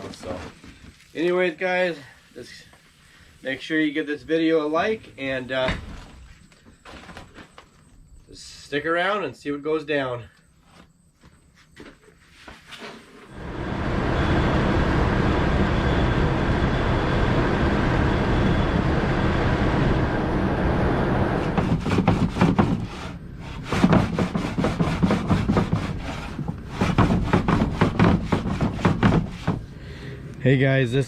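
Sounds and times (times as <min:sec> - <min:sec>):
heavy machine running: 0:13.3 - 0:23.9
rapid knocking strokes: 0:21.5 - 0:29.7.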